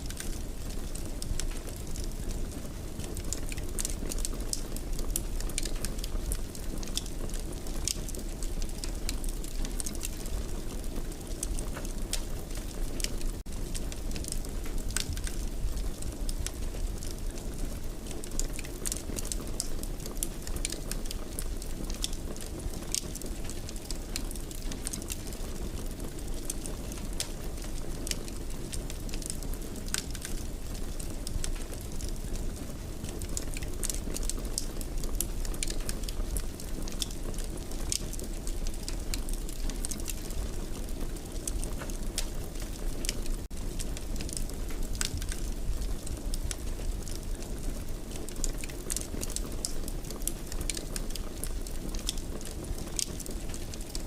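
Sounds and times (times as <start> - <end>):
fire crackling and popping: 0.0 - 54.0
fire low rumble: 0.0 - 54.0.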